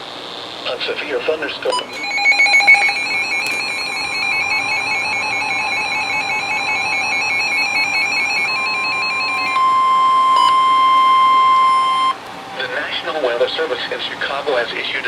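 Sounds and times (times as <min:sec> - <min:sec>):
steady single-pitch alarm tone: 0:01.7 - 0:12.6
warbling electronic alarm: 0:01.7 - 0:13.0.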